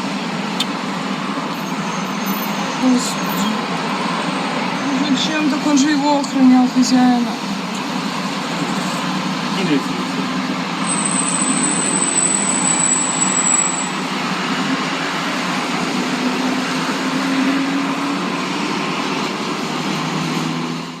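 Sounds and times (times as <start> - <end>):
thin high-pitched whine: 10.9 - 14.0.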